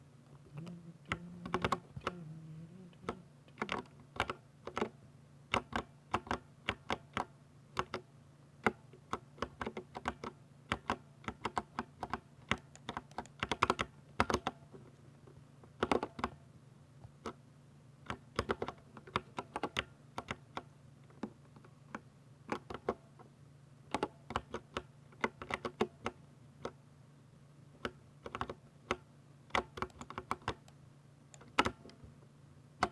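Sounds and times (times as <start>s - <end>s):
faint low hum: 0.0s - 32.9s
mechanical keyboard typing: 0.6s - 2.2s, 3.0s - 14.6s, 15.8s - 16.4s, 18.1s - 21.3s, 23.9s - 26.8s, 27.8s - 32.0s.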